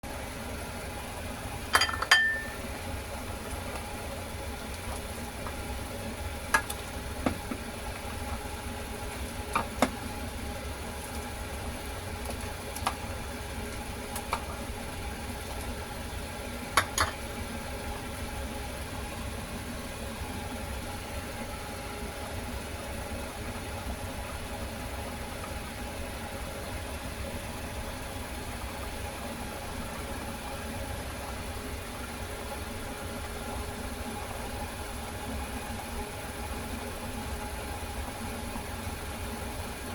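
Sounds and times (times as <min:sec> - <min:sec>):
kitchen utensils knocking and clinking: 0:01.8 - 0:02.6, 0:16.8 - 0:17.2.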